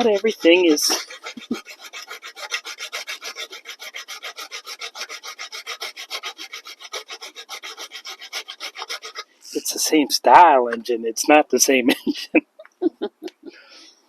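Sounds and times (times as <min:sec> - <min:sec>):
hand file rasping: 0:00.0 - 0:09.9.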